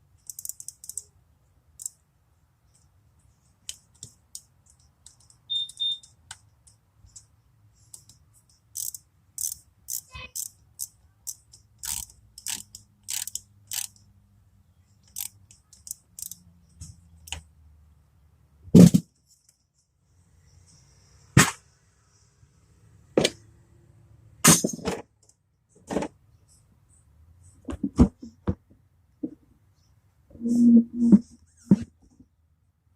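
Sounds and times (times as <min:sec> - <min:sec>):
ratchet clicking: 0:00.2 - 0:01.1, 0:01.8 - 0:02.0, 0:07.9 - 0:14.1, 0:15.0 - 0:16.5.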